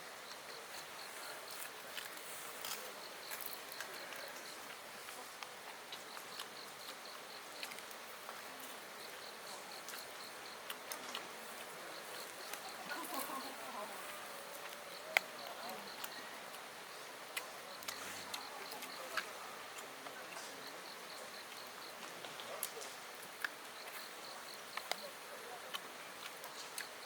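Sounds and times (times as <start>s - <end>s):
insect chirping: 0.0s - 27.0s.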